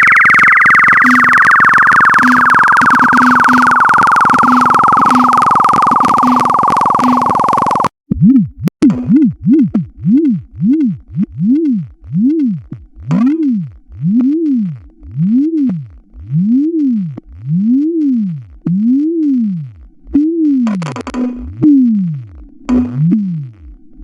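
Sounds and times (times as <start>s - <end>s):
noisy burst: 0.0s - 7.9s
synthetic tone sweeping in pitch: 0.0s - 7.9s.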